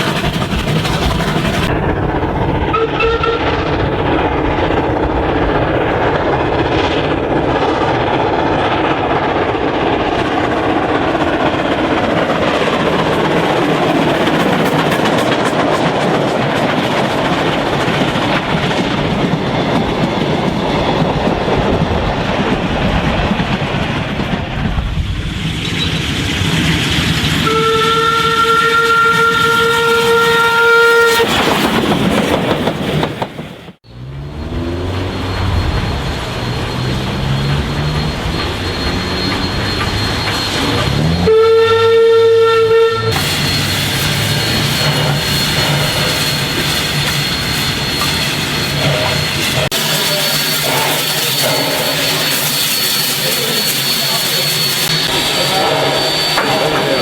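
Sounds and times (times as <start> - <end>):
steam train rumbling on track: 0.0 - 57.0
steam train whistle: 2.7 - 3.6, 27.4 - 31.6, 34.5 - 46.7.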